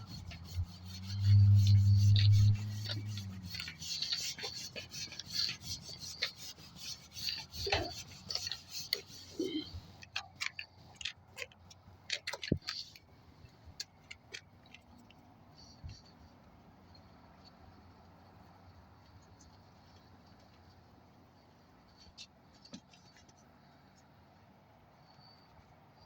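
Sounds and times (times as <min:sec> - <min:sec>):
rag scrubbing a garage door: 0:00.0 - 0:10.4.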